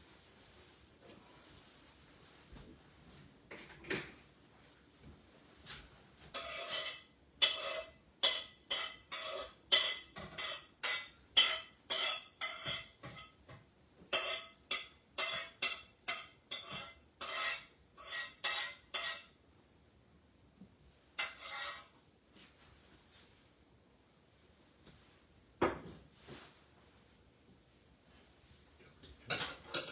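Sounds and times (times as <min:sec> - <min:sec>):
metal utensil scraping a pot: 0:06.3 - 0:13.4, 0:14.1 - 0:19.4, 0:21.2 - 0:22.0.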